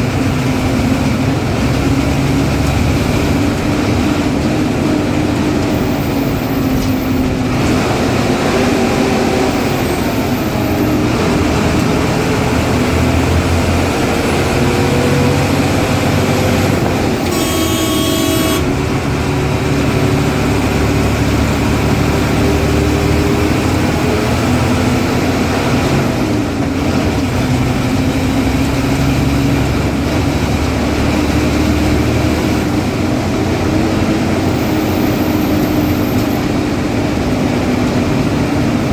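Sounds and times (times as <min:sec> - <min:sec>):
diesel bus engine running: 0:00.0 - 0:38.9
horn: 0:17.2 - 0:18.8.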